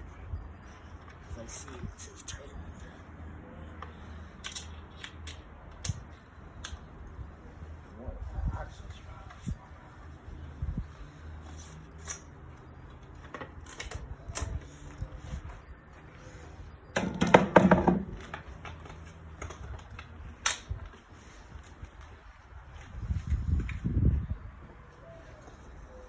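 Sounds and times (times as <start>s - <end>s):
bike wheel clicks and taps: 3.8s - 6.9s, 16.9s - 20.8s.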